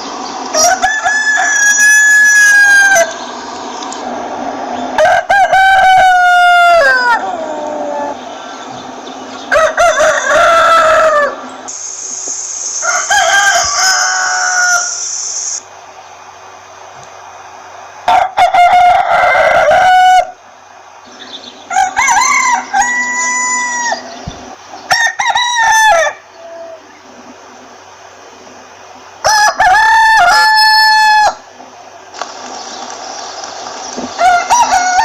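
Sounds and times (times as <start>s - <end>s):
roosters crowing: 0.0s - 11.7s, 12.6s - 16.7s, 17.3s - 31.7s, 32.4s - 35.0s
loud high hiss: 11.6s - 16.9s.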